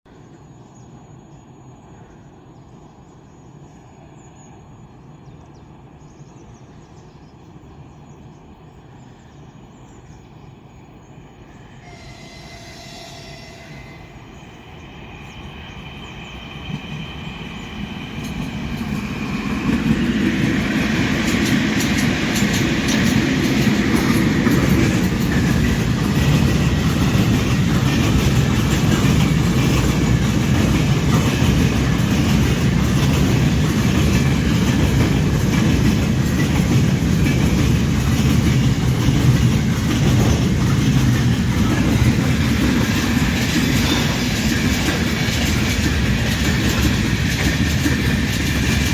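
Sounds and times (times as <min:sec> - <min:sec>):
freight train rumbling past: 0:00.2 - 0:48.9
faint high wheel squeal: 0:11.5 - 0:14.5
wheels clicking over rails: 0:17.8 - 0:48.9.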